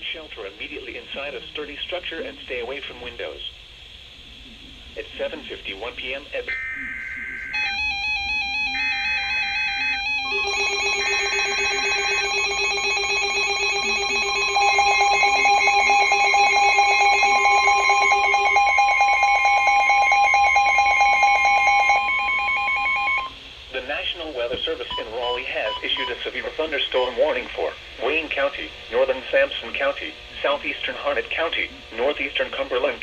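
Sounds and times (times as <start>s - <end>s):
digital header bursts: 6.4s - 19.2s
long steady alarm tone: 6.4s - 23.4s, 24.9s - 27.5s.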